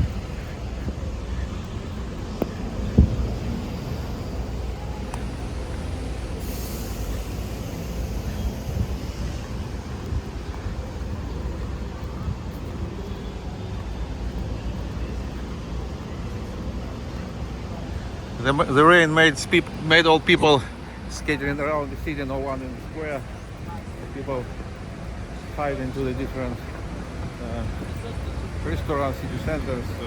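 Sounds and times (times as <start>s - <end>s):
low traffic rumble: 0.0s - 30.0s
high hiss: 2.7s - 10.0s.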